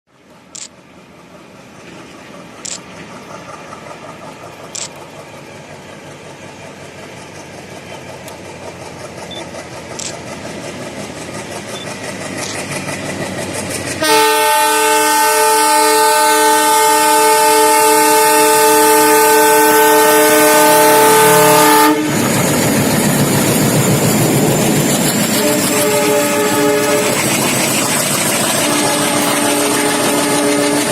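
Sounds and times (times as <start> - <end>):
diesel locomotive engine chugging: 0.1 - 30.9
multi-tone train horn blast: 14.0 - 22.4, 25.3 - 27.4, 28.5 - 30.9.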